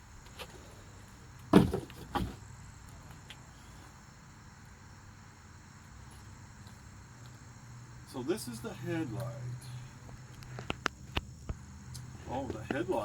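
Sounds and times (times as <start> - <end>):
boxes thumping when set down: 1.5 - 2.4.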